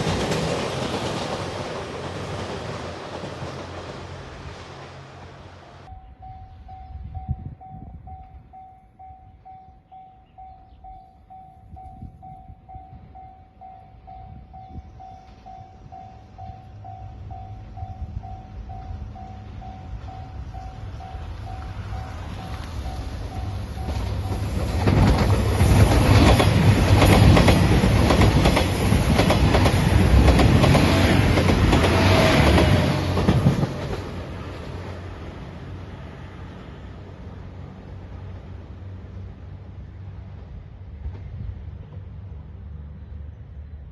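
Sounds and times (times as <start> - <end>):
diesel train passing: 0.0 - 43.9
electronic crossing bell dinging: 5.9 - 24.5
wheels clattering over rail joints: 22.8 - 34.3.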